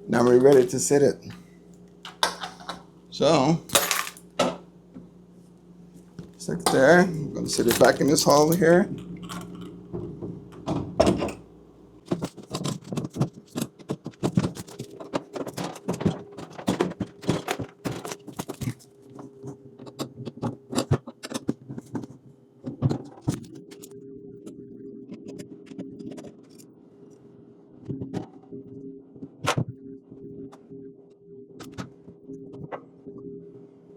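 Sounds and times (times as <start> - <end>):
steady low hum: 0.0 - 20.8
refrigerator door parts clicking: 2.1 - 2.8.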